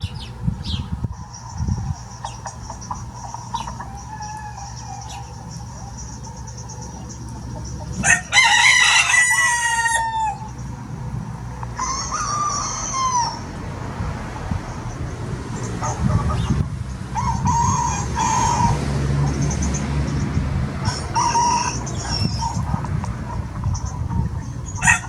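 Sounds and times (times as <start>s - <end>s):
chickens clucking: 0.0s - 25.0s
rooster crowing: 2.9s - 10.8s, 11.4s - 13.8s, 17.1s - 18.9s, 20.8s - 23.4s, 24.6s - 25.0s.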